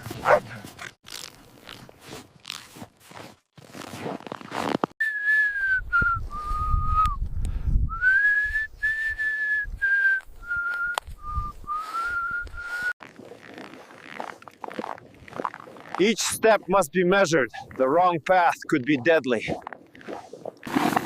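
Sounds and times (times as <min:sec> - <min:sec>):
person whistling a tune: 0:05.0 - 0:07.2, 0:07.8 - 0:13.0.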